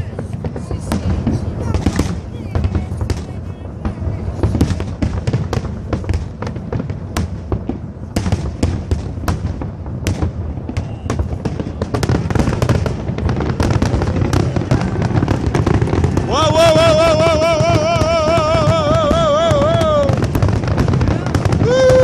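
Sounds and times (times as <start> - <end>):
fireworks bangs and crackles: 0.0 - 22.0.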